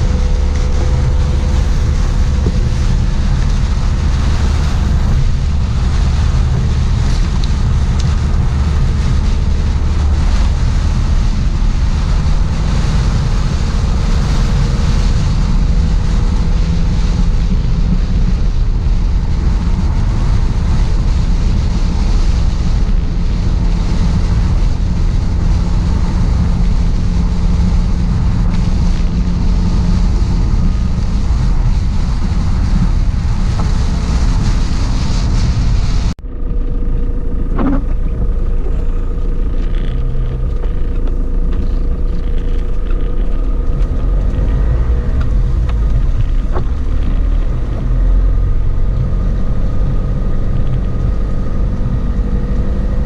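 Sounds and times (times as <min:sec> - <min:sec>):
heavy rain rushing: 0:00.0 - 0:53.0
wind buffeting microphone: 0:00.0 - 0:53.0.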